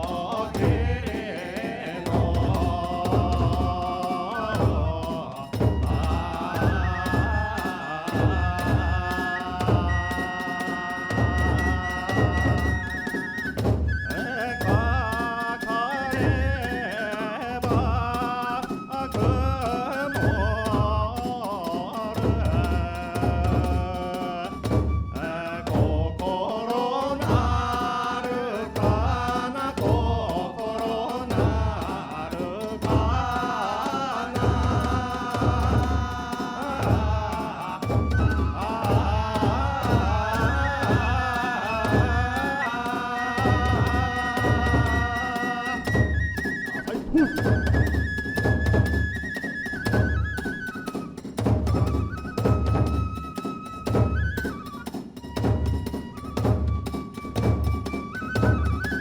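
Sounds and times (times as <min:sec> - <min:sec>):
chanted voices: 0:00.0 - 0:13.2, 0:21.4 - 0:46.2
large drum beating steadily: 0:00.0 - 0:59.0
high flute melody: 0:03.8 - 0:17.0, 0:18.4 - 0:21.5, 0:23.8 - 0:32.0, 0:32.9 - 0:59.0.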